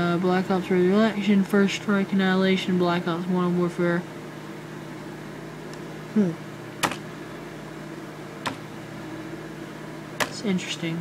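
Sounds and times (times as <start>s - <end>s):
low background hum: 0.0s - 11.0s
man humming: 6.1s - 6.4s
sharp clicks: 6.8s - 7.0s.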